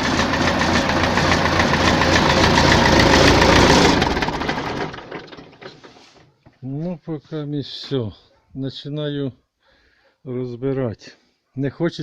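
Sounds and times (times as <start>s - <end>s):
knocking tractor engine: 0.0s - 6.2s.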